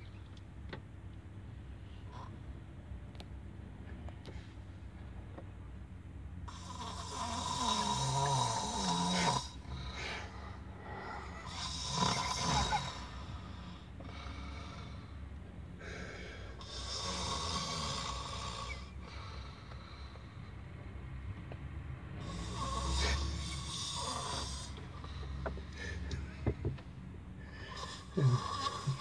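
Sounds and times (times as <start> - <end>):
man snoring: 6.5 - 15.1, 15.8 - 19.7, 22.2 - 26.3, 27.4 - 29.0.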